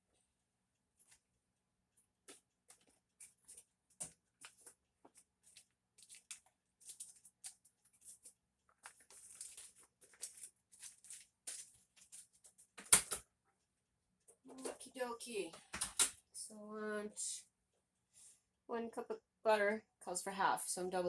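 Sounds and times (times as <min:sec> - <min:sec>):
paper crinkling: 0:02.2 - 0:13.2.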